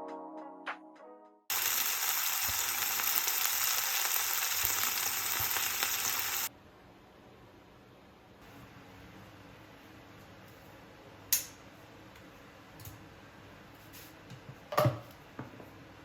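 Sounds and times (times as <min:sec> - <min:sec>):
music: 0:00.0 - 0:01.5
loud steady hiss: 0:01.5 - 0:06.5.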